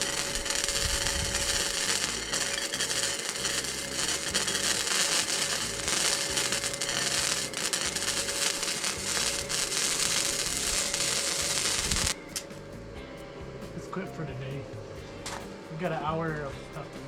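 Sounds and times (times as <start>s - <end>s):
welding arc crackling: 0.0s - 12.6s.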